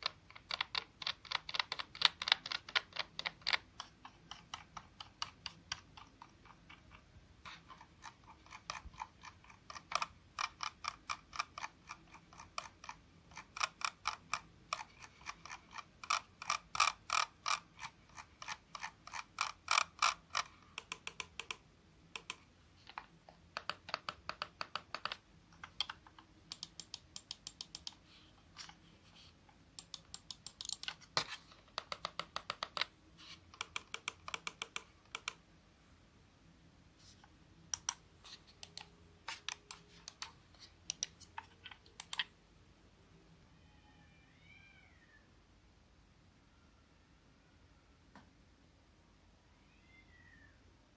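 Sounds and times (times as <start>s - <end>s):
mouse buttons clicking: 0.0s - 28.0s, 29.8s - 32.9s, 33.5s - 35.4s, 37.7s - 42.4s.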